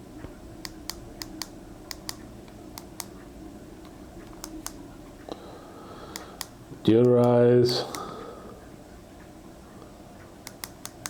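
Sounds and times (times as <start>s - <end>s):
plastic remote buttons clicking: 0.6s - 2.2s, 4.2s - 4.8s, 10.4s - 11.0s.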